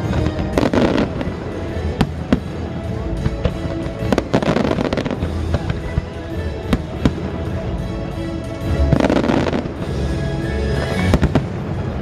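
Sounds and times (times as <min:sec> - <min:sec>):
fireworks bangs and crackles: 0:00.0 - 0:10.1, 0:10.7 - 0:12.0
music over loudspeakers: 0:00.0 - 0:12.0.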